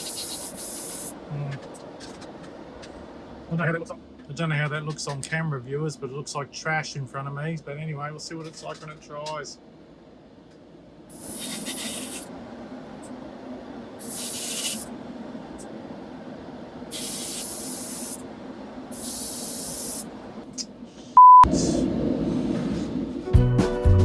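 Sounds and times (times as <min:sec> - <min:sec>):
spray paint hissing: 0:00.0 - 0:01.2, 0:11.1 - 0:12.3, 0:14.0 - 0:14.9, 0:16.9 - 0:18.2, 0:18.9 - 0:20.1
loud beep: 0:21.2 - 0:21.5.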